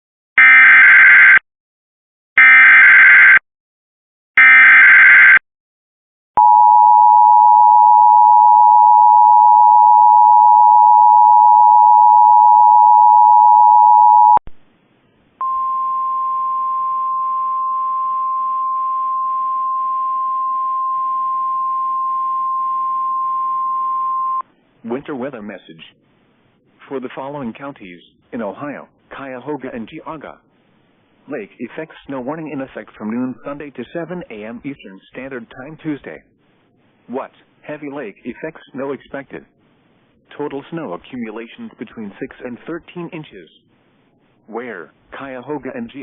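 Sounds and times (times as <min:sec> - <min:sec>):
steady warning alarm tone: 0:04.4 - 0:05.4.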